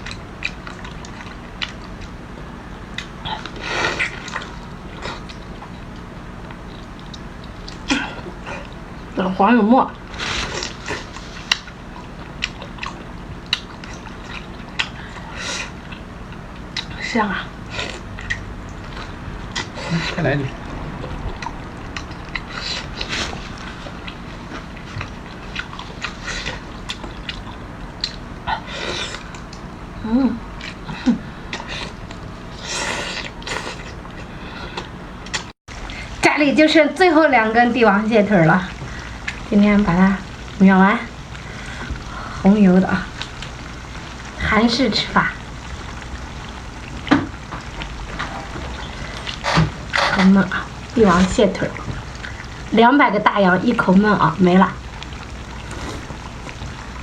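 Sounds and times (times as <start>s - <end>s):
person chewing: 0.0s - 2.2s, 17.7s - 20.2s, 21.0s - 29.7s, 55.2s - 57.0s
slurp: 55.5s - 57.0s.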